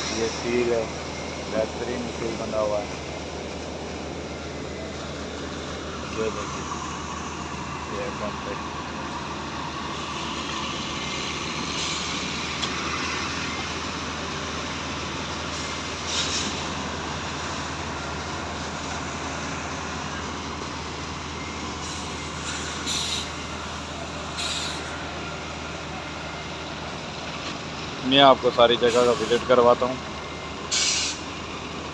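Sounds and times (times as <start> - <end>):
diesel engine running steadily: 0.0 - 31.9
short hisses: 21.8 - 23.4, 24.4 - 24.9, 30.7 - 31.2.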